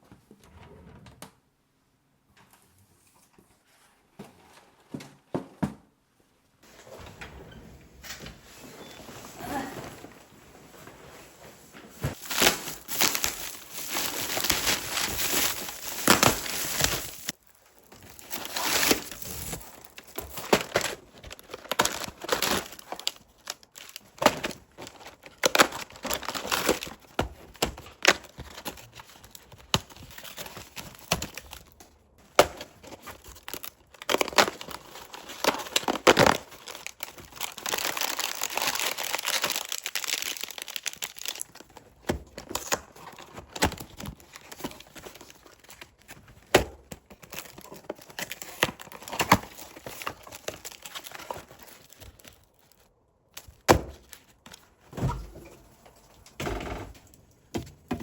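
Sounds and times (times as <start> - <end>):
packaging crinkling: 12.1 - 54.8.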